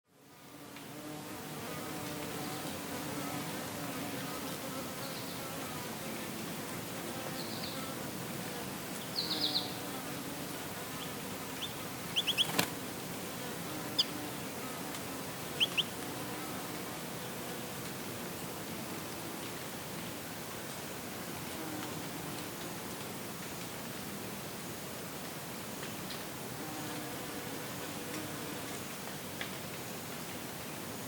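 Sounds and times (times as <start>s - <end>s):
bees buzzing: 6.9s - 17.6s
high bird chirps: 11.6s - 12.7s, 15.6s - 15.9s
sharp click: 12.3s - 12.7s.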